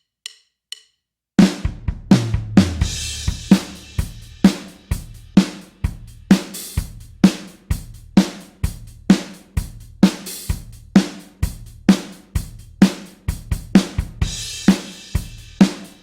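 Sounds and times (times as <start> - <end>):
rock drum kit beat: 1.4 - 16.0.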